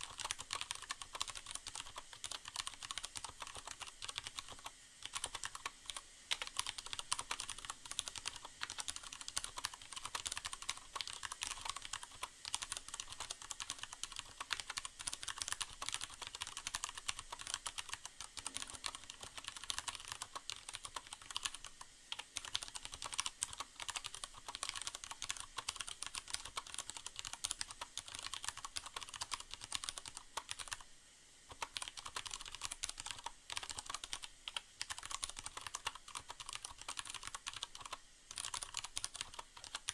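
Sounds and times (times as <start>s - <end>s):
mechanical keyboard typing: 0.0s - 30.8s, 31.5s - 39.9s
faint rain hiss: 0.0s - 39.9s.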